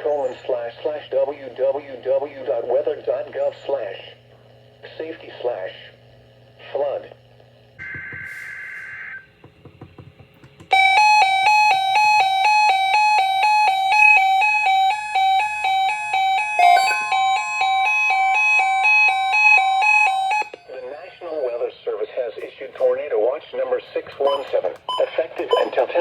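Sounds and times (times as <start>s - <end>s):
alternating electronic alarm beeps: 7.8s - 9.3s, 10.7s - 22.2s, 24.2s - 26.0s
steady electronic tone: 14.7s - 21.4s.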